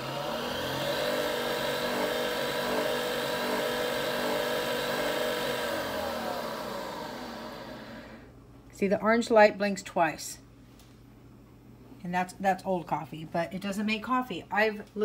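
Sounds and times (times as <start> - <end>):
coffee machine motor whirring: 0.0 - 8.3.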